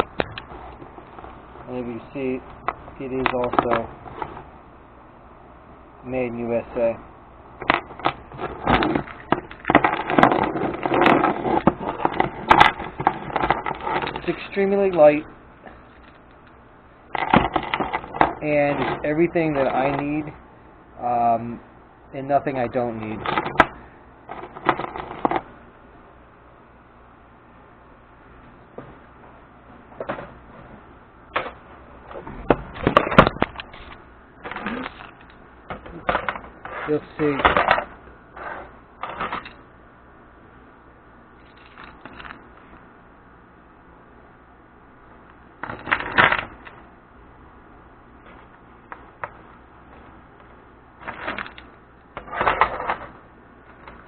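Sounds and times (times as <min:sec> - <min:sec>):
keys clinking and rattling: 0:41.4 - 0:42.4.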